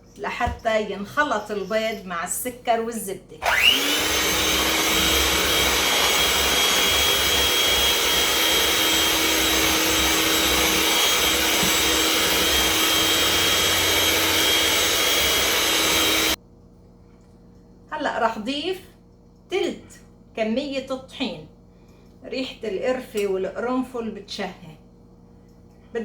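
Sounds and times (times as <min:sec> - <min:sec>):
electric mixer whining: 0:03.4 - 0:16.4.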